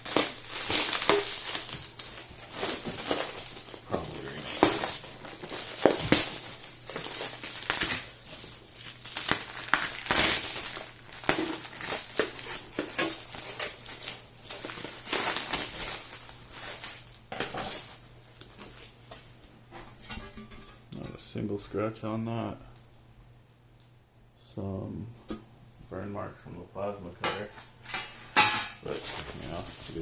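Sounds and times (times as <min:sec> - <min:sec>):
packing material crinkling: 0:00.0 - 0:19.3, 0:28.8 - 0:30.0.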